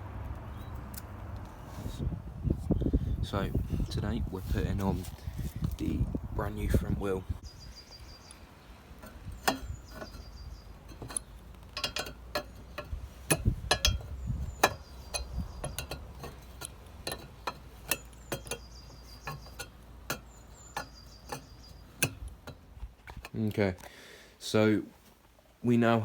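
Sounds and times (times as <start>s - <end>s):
high chirping call: 7.4s - 10.8s, 17.9s - 22.1s.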